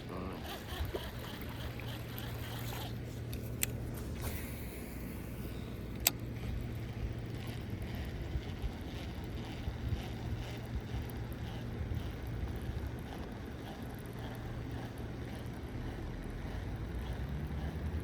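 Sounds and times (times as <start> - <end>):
wind rumble on microphone: 6.4 - 14.2.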